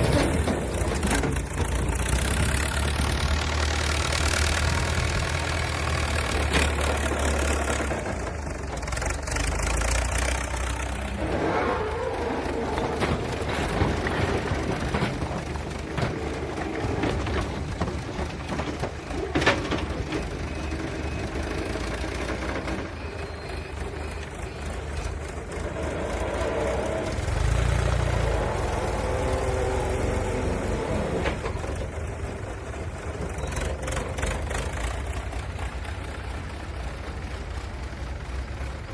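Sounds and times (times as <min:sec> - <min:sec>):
heavy machine engine running: 0:00.0 - 0:38.9.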